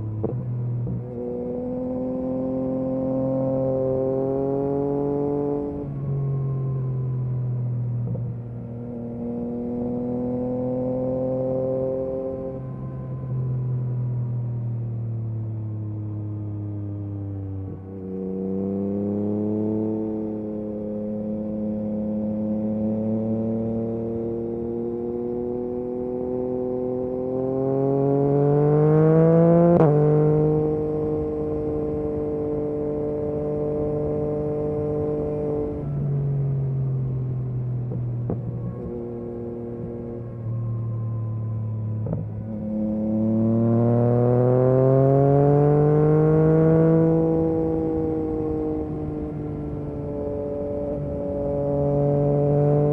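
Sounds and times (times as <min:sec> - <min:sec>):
motorcycle engine revving: 0:00.0 - 0:06.4, 0:17.6 - 0:36.3, 0:37.2 - 0:52.9.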